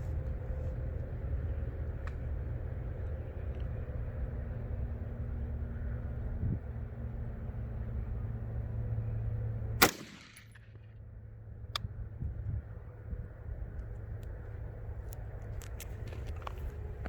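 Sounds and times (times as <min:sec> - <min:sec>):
rifle shot with echo: 0:09.8 - 0:10.8.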